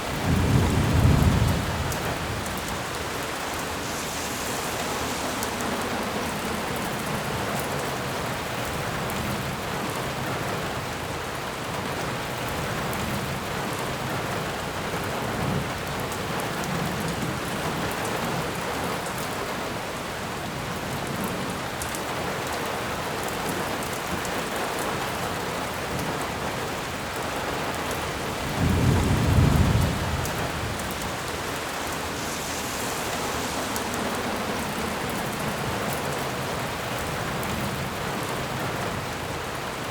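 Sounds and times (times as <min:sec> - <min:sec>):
low rumble of thunder: 0:00.0 - 0:10.9, 0:27.7 - 0:39.9
steady rain falling: 0:00.0 - 0:39.9.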